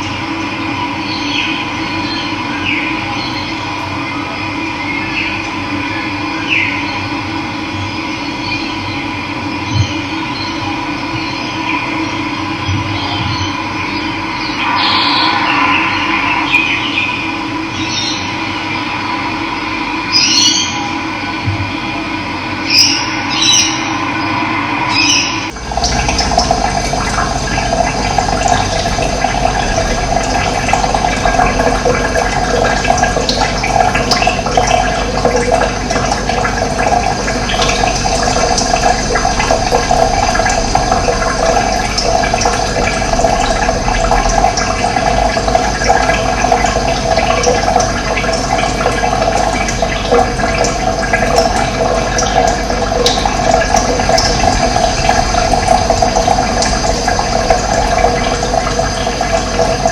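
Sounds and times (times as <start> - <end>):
running water rushing: 14.3 - 19.0, 22.7 - 59.9.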